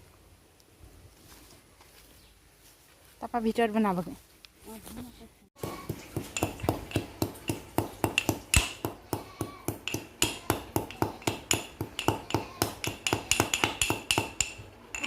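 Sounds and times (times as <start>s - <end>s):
metal tool knocking: 5.6s - 15.0s.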